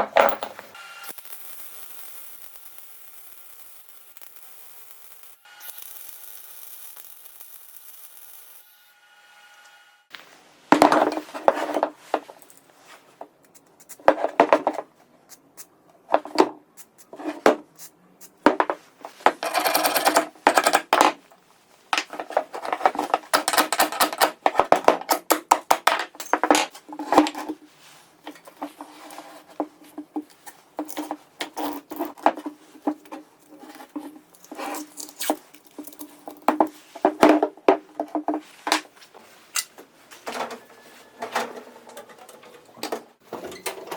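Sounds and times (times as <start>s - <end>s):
metal parts and tools clinking: 0.0s - 0.8s, 18.4s - 21.1s, 22.0s - 27.6s, 28.3s - 38.8s.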